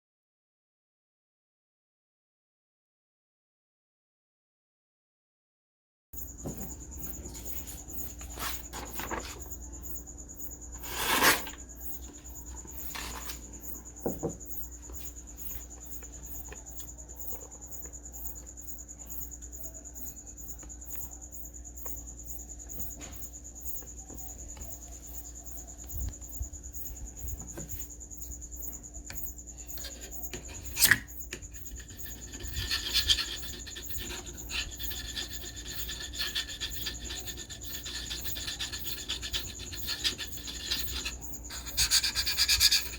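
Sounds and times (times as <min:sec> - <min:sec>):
knife blade scraping metal: 0:10.7 - 0:12.0, 0:29.7 - 0:42.9.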